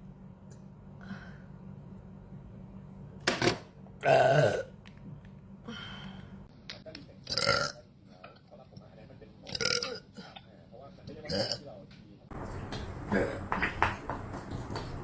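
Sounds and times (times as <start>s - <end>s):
person burping: 4.0s - 4.8s, 7.3s - 7.8s, 9.5s - 10.4s, 11.3s - 11.6s, 13.1s - 13.5s.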